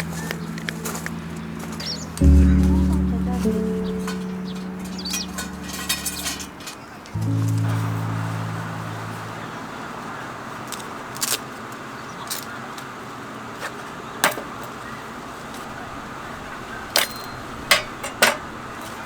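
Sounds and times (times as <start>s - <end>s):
steady background hiss: 0.0s - 11.1s.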